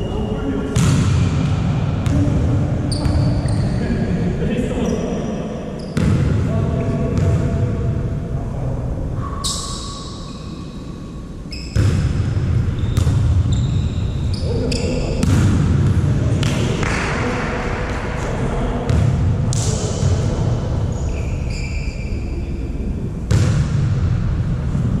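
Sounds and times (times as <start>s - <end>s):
volleyball being struck: 0.8s - 2.2s
shoes squeaking on court: 2.9s - 3.8s, 12.8s - 15.2s, 20.9s - 22.1s.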